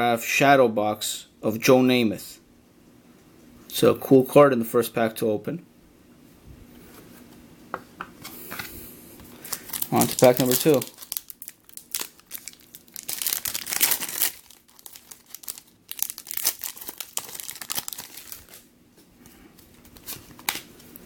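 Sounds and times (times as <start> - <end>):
foil wrapper tearing and crinkling: 9.4 - 18.7, 19.8 - 20.9.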